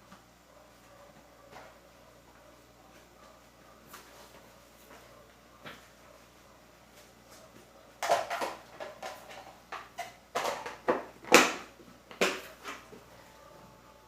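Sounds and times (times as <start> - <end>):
kitchen things knocking and clattering: 8.0 - 12.5.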